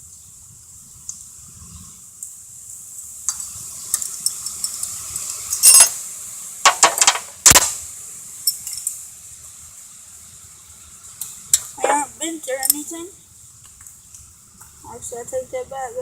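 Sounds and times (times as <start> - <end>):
metal parts clinking: 5.5 - 6.0, 6.7 - 7.6, 8.5 - 9.0.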